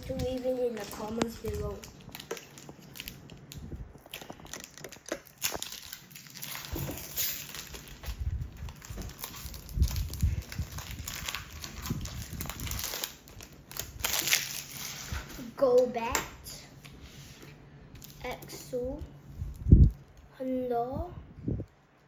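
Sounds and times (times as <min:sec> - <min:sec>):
foil wrapper crinkling and tearing: 0:00.0 - 0:15.3.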